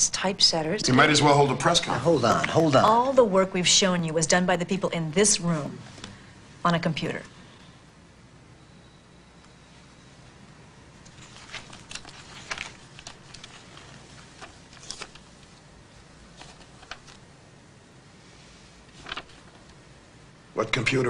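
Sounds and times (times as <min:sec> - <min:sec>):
paper rustling: 0:02.2 - 0:03.2, 0:11.0 - 0:15.6, 0:16.3 - 0:17.2, 0:18.7 - 0:19.8.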